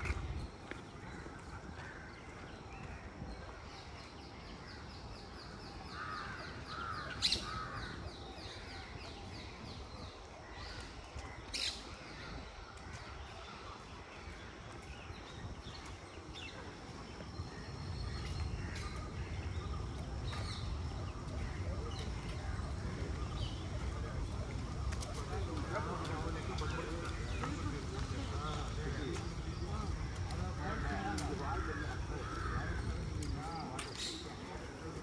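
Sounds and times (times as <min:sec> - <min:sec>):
crows cawing: 0:30.6 - 0:33.0.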